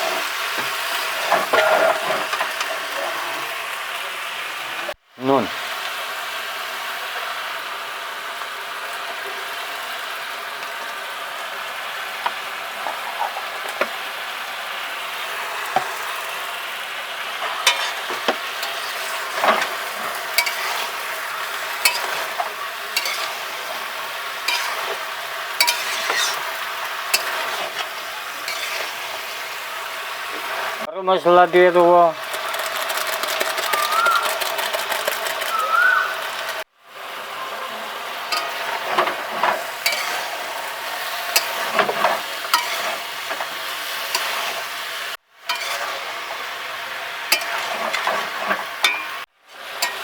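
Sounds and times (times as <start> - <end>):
curry sizzling in a pan: 0.0 - 50.0
utensil scraping a pan: 17.4 - 25.0, 25.6 - 29.3, 32.2 - 36.6, 38.3 - 40.5, 41.3 - 44.6, 45.5 - 46.1, 47.3 - 49.0.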